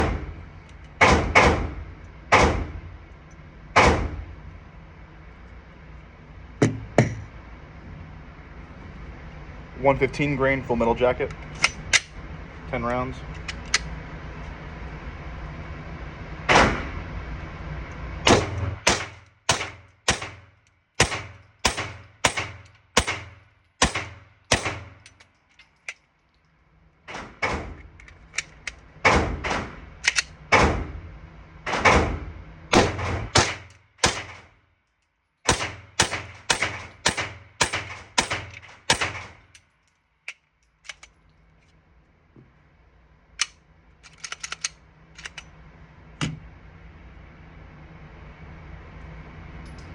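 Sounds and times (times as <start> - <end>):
pistol shots: 18.3 - 25.0, 31.7 - 34.5, 35.5 - 39.4.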